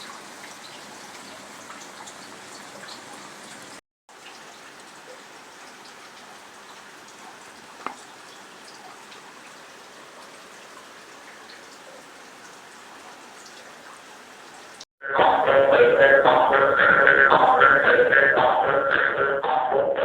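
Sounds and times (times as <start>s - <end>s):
faint drip ticks: 0.0s - 14.8s
rain falling: 0.0s - 14.8s.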